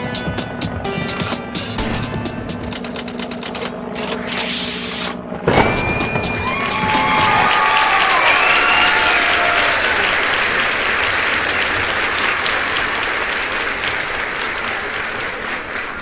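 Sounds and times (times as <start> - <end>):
crowd applause: 5.6 - 16.0.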